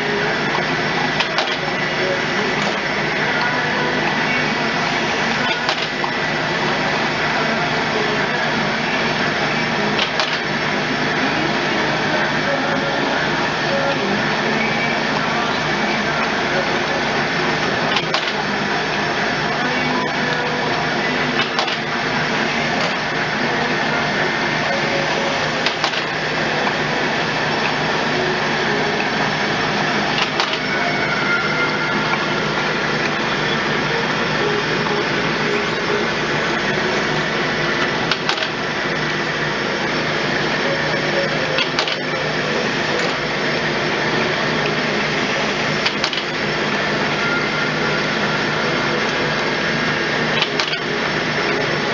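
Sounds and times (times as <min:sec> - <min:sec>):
lathe running: 0:00.0 - 0:51.9
sharp clicks: 0:37.8 - 0:38.6.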